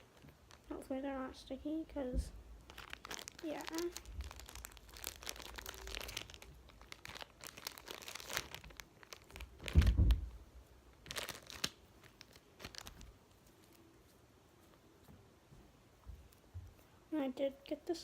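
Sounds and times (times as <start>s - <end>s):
plastic bag crinkling: 0.0s - 1.0s, 2.6s - 10.3s, 10.9s - 13.8s
dull thump: 9.7s - 10.3s.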